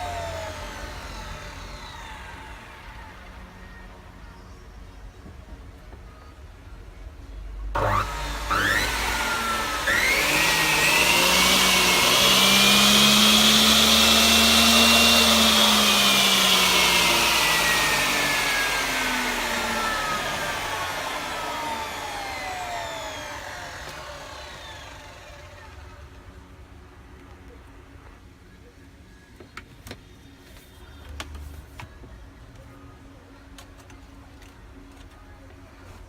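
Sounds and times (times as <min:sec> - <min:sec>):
cutting saw whining: 0:00.0 - 0:03.9, 0:07.8 - 0:26.2.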